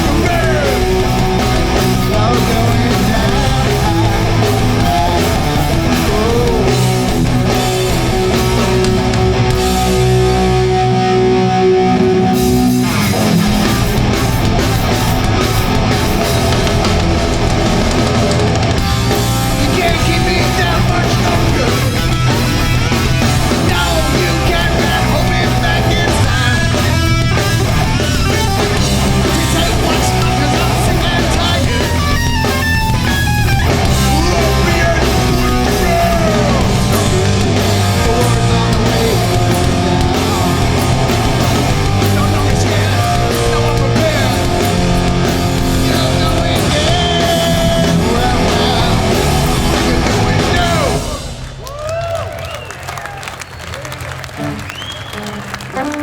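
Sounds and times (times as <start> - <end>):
distorted electric guitars: 0.0 - 51.9, 54.1 - 56.0
bass guitar: 0.0 - 53.1, 53.7 - 56.0
drums: 0.0 - 56.0.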